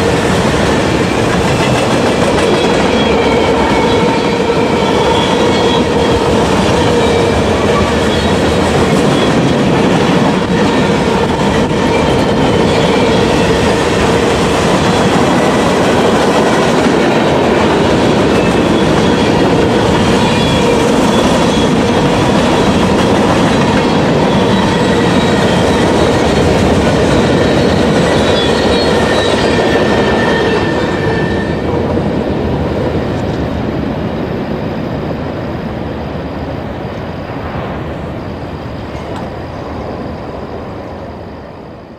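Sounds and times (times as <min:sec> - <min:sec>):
train wheels clickety-clack: 0:00.0 - 0:34.3, 0:38.8 - 0:40.6
metallic ringing squeal: 0:02.5 - 0:09.6, 0:18.4 - 0:21.8, 0:27.1 - 0:31.6.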